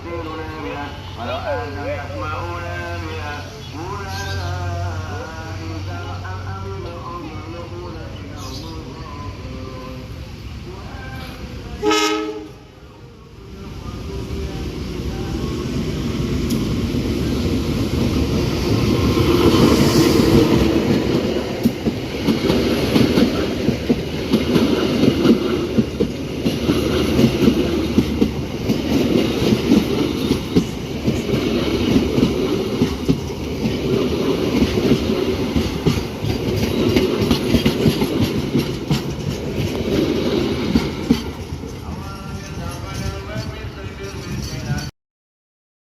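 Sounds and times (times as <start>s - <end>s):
train rumbling past: 0.0s - 44.9s
train wheels clattering over rail joints: 17.9s - 44.9s.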